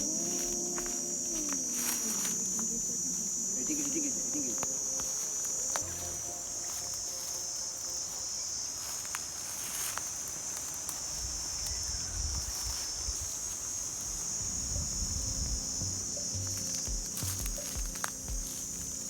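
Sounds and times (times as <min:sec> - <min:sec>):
high-pitched insect chorus: 0:00.0 - 0:19.0
low rumble: 0:14.4 - 0:17.6.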